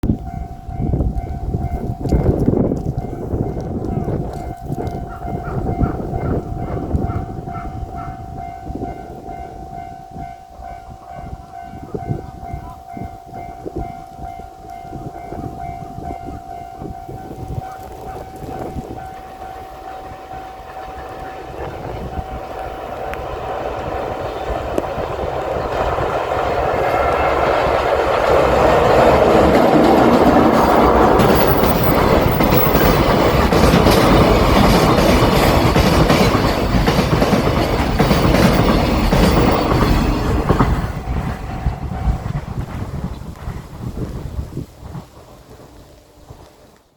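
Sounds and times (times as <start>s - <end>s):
crossing bell ringing: 0.0s - 42.6s
train wheels clattering: 17.0s - 46.8s.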